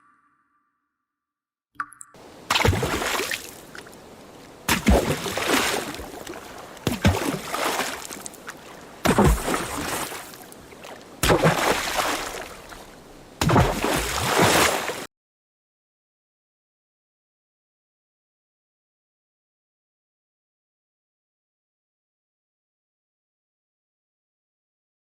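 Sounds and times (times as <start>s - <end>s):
water sloshing and splashing: 2.2s - 15.1s.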